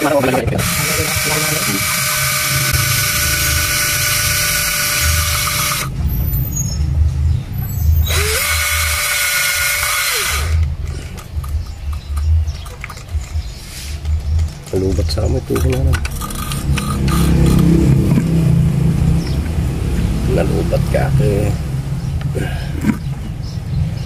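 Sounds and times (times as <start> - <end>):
small power drill running: 0.0 - 5.9, 8.0 - 10.7.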